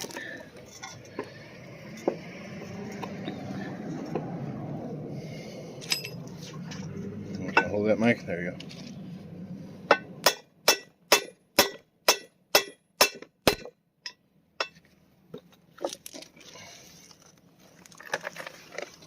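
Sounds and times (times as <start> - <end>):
hammer striking metal: 9.9 - 14.8.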